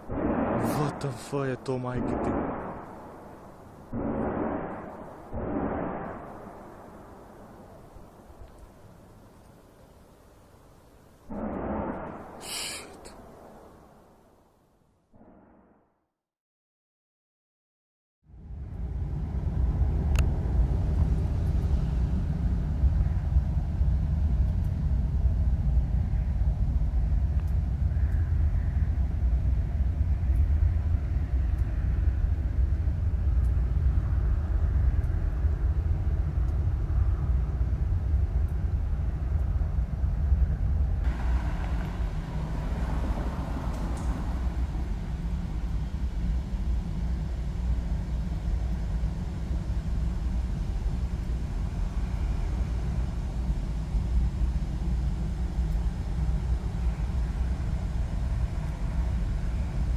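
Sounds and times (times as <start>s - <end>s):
deep low rumble: 18.3s - 59.9s.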